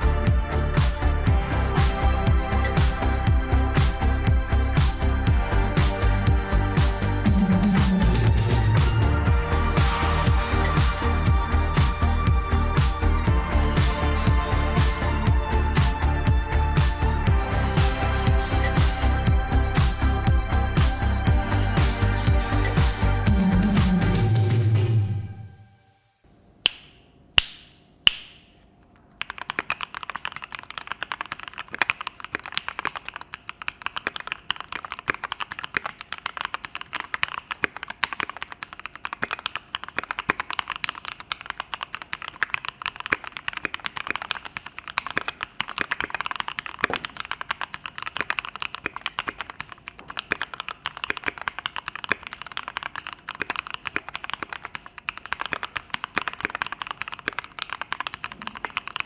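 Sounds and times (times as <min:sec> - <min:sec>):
mechanical keyboard typing: 0:29.2 - 0:59.0.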